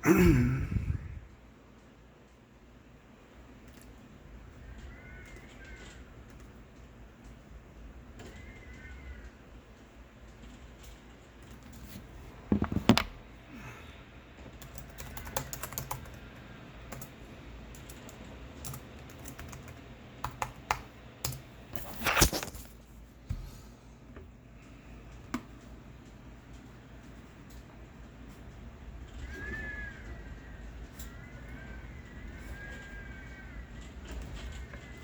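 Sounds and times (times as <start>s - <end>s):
computer keyboard typing: 3.6s - 4.0s, 4.9s - 7.4s, 14.5s - 22.0s.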